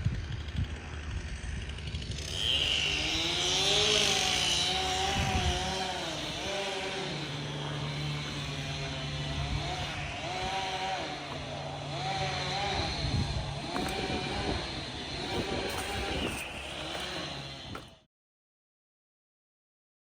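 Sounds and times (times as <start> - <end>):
chainsaw running: 0.0 - 18.1.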